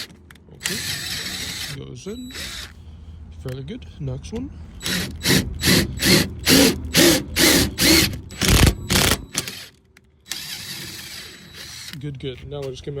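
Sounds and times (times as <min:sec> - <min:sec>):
power drill driving screw: 0:00.0 - 0:02.8, 0:04.8 - 0:12.0.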